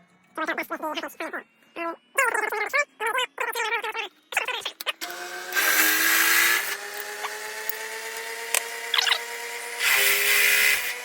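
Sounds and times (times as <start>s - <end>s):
drill bit biting into steel: 5.0s - 11.0s
drill press motor humming: 5.0s - 11.0s.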